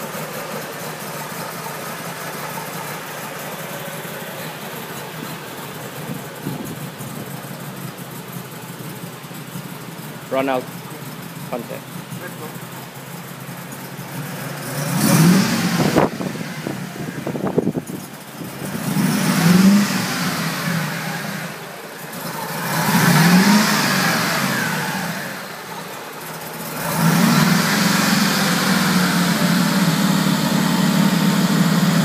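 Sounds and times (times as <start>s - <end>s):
misfiring engine revving: 9.5s - 32.0s.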